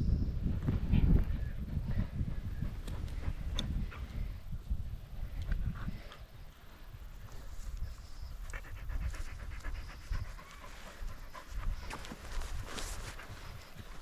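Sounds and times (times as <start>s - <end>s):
dog panting: 1.7s - 4.5s, 8.1s - 14.0s.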